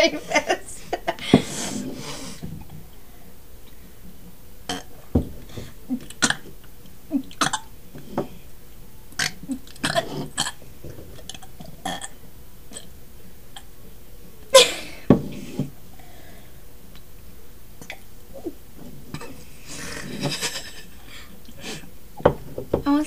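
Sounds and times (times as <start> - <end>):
people burping: 4.7 - 7.7, 9.1 - 10.6, 11.2 - 12.9, 14.5 - 15.2, 17.8 - 20.7.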